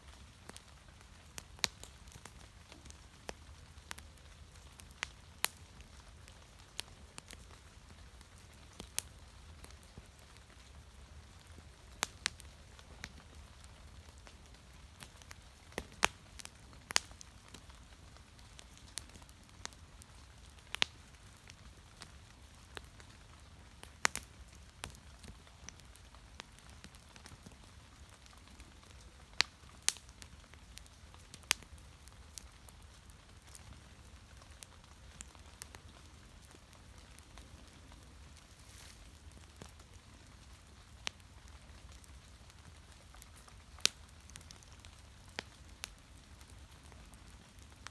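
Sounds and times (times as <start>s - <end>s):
wood fire crackling: 0.0s - 47.9s.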